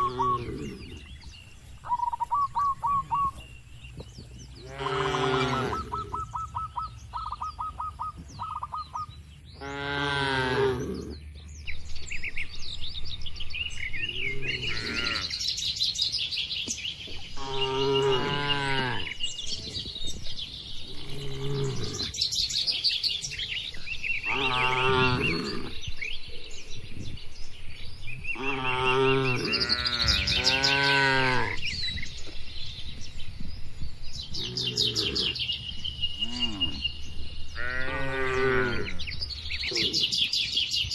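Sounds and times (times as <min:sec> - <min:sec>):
birds chirping: 0:00.0 - 0:40.9
cattle mooing: 0:04.6 - 0:06.1, 0:24.3 - 0:25.8.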